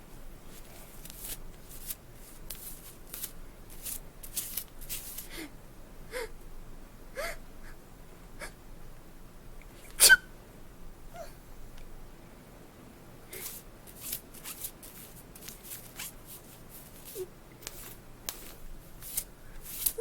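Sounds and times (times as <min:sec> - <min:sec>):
person sniffing: 0:13.3 - 0:13.7.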